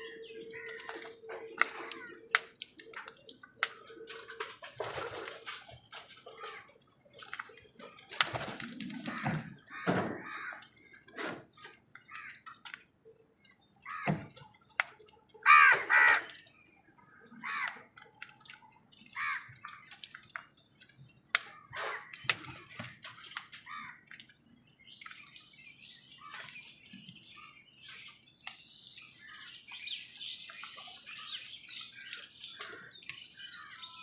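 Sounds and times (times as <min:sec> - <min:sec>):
crows cawing: 0:00.1 - 0:02.3, 0:06.2 - 0:06.8, 0:08.9 - 0:11.0, 0:12.0 - 0:12.6, 0:13.8 - 0:14.3, 0:15.4 - 0:16.5, 0:17.2 - 0:17.9, 0:19.0 - 0:19.9, 0:23.6 - 0:24.1.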